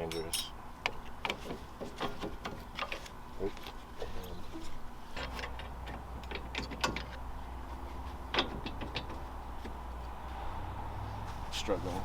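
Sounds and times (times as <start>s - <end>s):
low steady hum: 0.0s - 1.2s.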